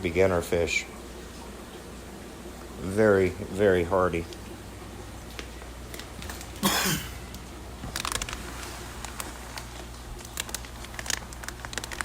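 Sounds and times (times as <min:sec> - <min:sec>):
plastic crinkles and clicks: 0:05.3 - 0:06.6, 0:07.3 - 0:12.0
plastic bags rustling: 0:05.3 - 0:12.0.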